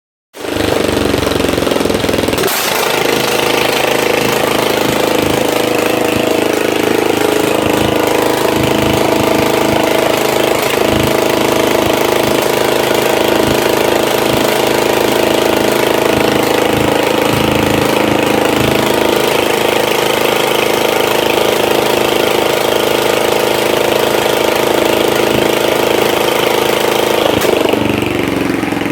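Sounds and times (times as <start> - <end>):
tractor engine starting and running: 0.4 - 28.9.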